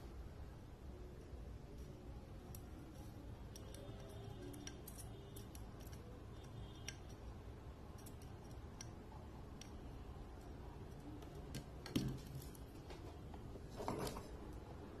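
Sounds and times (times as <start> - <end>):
low steady hum: 0.0 - 15.0
small tools clicking on circuit board: 2.4 - 12.0.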